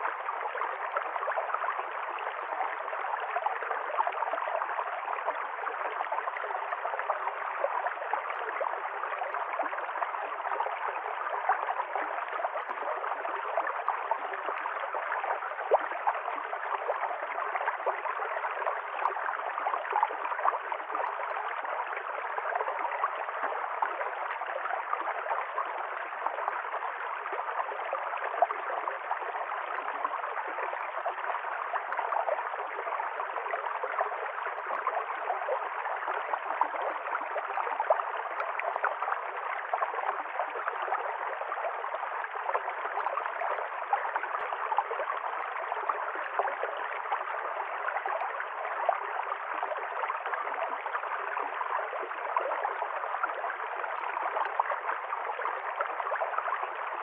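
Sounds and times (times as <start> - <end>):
stream water flowing and gurgling: 0.0 - 57.0.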